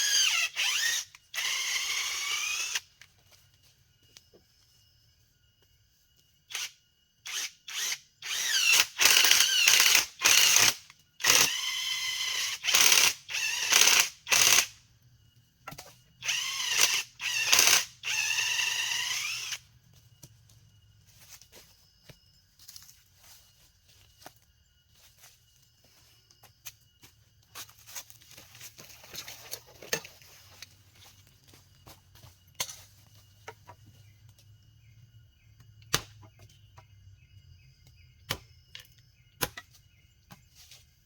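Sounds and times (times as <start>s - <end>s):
power drill whining: 0.0s - 2.8s, 7.3s - 14.7s, 16.2s - 19.6s.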